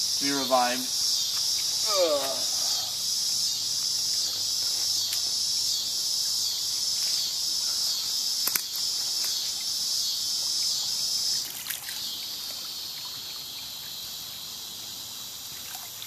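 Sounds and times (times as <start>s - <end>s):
pulsing insect chorus: 0.0s - 16.0s
sharp click: 8.4s - 8.8s.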